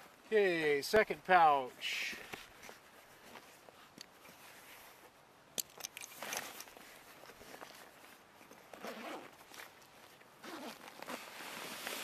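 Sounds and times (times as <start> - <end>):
fabric rustling: 6.0 - 12.0.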